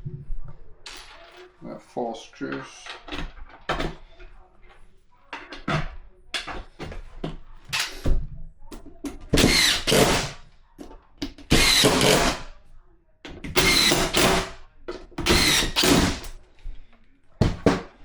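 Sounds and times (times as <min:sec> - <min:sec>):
drill-driver driving screws: 0:09.4 - 0:10.4, 0:11.5 - 0:12.5, 0:13.5 - 0:14.6, 0:15.2 - 0:16.4.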